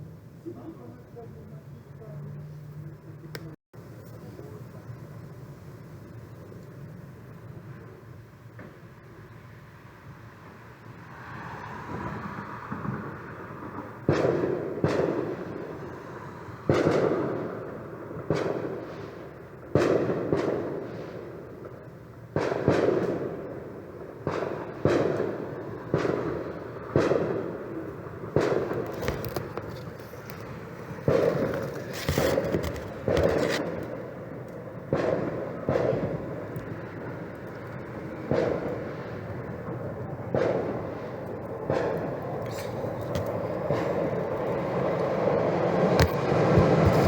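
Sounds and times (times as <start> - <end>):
distant booms with rolling echo: 11.6 - 47.0
sharp crackle: 18.2 - 47.0.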